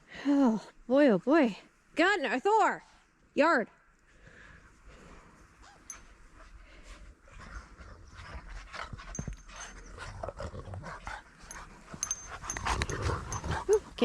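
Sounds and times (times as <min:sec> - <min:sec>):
dogs panting: 0:05.5 - 0:14.0.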